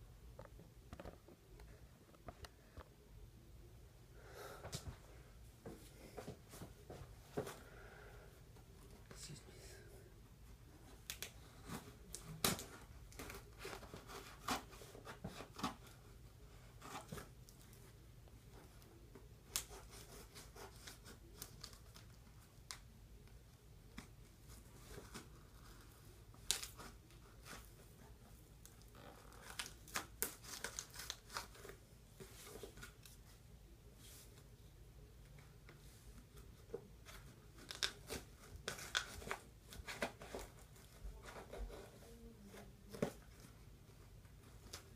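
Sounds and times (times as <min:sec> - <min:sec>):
cardboard and plastic tearing: 0:28.8 - 0:31.8.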